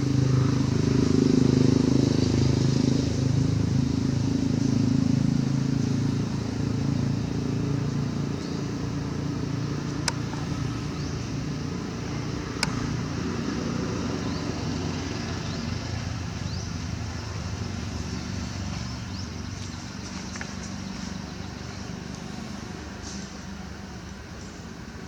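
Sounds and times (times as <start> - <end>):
motor vehicle engine hum: 0.0 - 25.0
sharp clicks: 9.9 - 10.8, 12.4 - 13.1.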